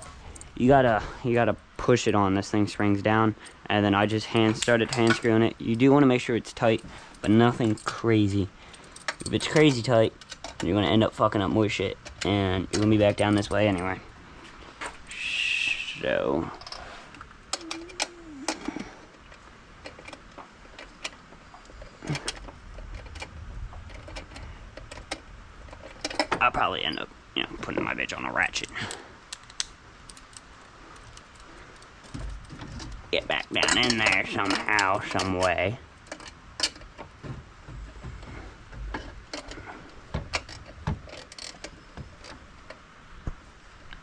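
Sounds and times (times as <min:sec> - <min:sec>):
steady low rumble: 0:00.0 - 0:41.1
hand tools clicking and knocking: 0:04.3 - 0:05.9, 0:06.6 - 0:11.3, 0:12.0 - 0:14.0, 0:16.6 - 0:27.0, 0:28.6 - 0:42.8.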